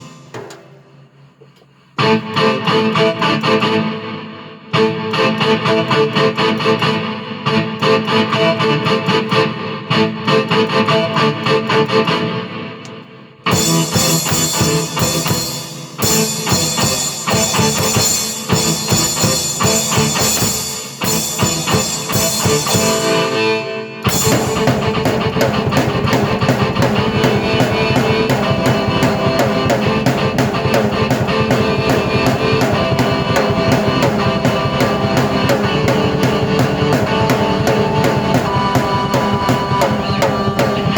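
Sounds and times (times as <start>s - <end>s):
drum kit: 0.0s - 2.8s, 12.9s - 40.9s
keyboard playing rock music: 13.3s - 40.9s.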